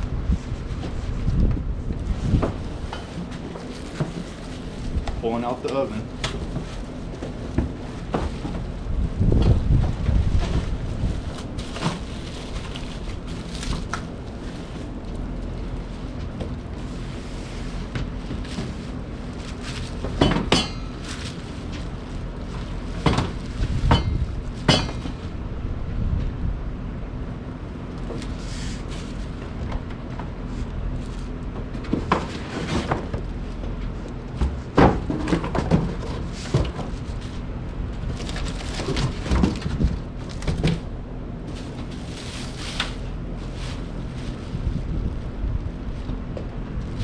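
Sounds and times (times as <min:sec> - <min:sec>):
steady low hum: 0:00.0 - 0:47.0
packaging rustling: 0:02.7 - 0:08.9, 0:10.5 - 0:24.6, 0:38.1 - 0:45.2
knocks and clatters of oven parts: 0:19.9 - 0:21.8, 0:22.6 - 0:25.2, 0:31.5 - 0:37.1, 0:38.4 - 0:40.9.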